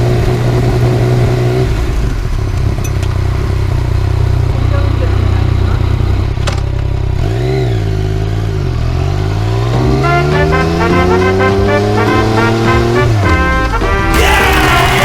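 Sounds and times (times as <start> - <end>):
motorcycle engine accelerating: 0.0 - 15.0
music: 9.8 - 15.0.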